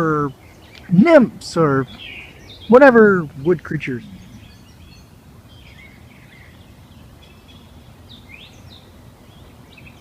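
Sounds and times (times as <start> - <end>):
birds chirping and calling: 0.0 - 10.0
low background rumble: 0.8 - 8.0.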